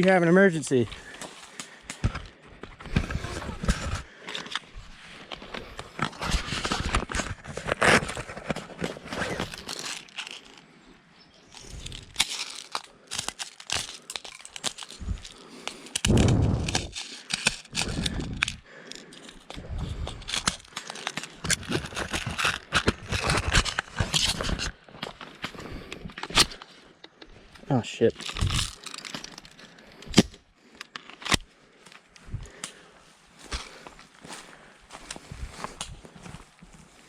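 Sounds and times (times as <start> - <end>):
dry leaves crunching underfoot: 7.3 - 10.6, 11.4 - 18.2, 33.3 - 36.6
low rumble: 16.1 - 16.9.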